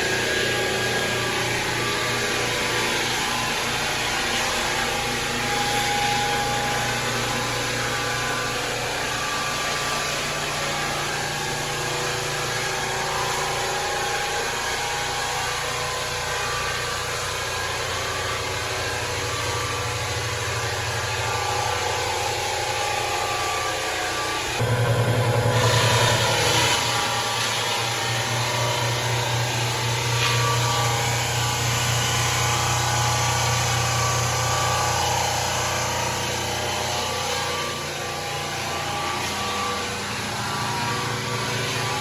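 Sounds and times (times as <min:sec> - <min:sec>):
electric floor sander running: 0:00.0 - 0:42.0.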